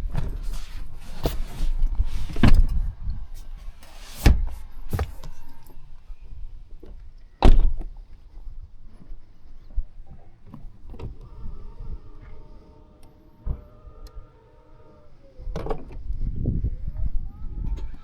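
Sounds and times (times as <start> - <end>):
heavy car door shutting: 0.0 - 6.0, 10.4 - 16.0
car door clicks and thuds: 0.1 - 5.8, 6.9 - 8.0.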